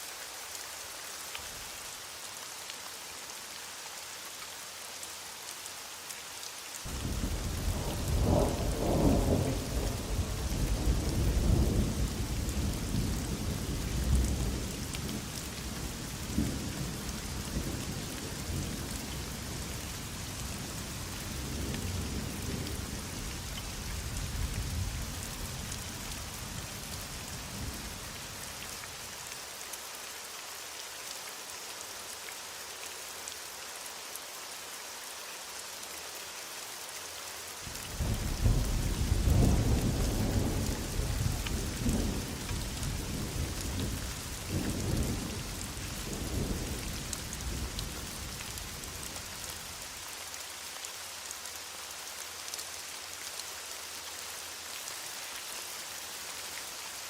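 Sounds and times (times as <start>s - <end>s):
heavy rain falling: 0.0s - 57.0s.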